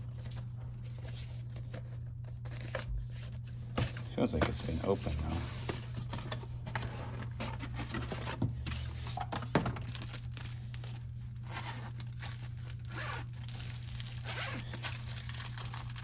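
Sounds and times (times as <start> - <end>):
packaging tape tearing: 9.8 - 16.0.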